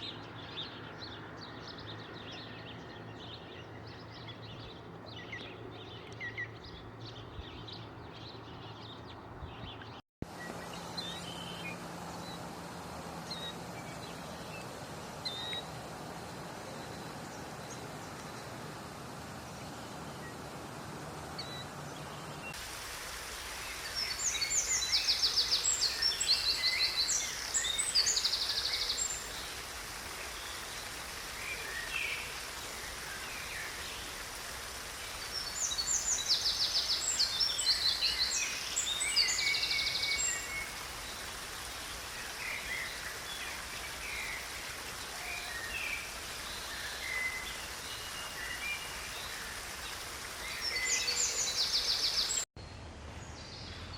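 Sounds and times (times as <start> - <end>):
songbirds trilling and chirping: 0.0 - 52.5
background hiss: 10.3 - 52.5.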